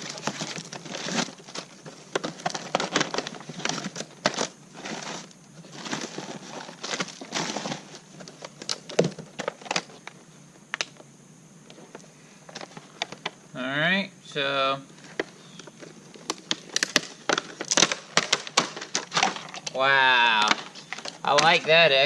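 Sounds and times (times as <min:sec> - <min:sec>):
packaging crinkling: 0:00.0 - 0:10.2, 0:15.0 - 0:22.0.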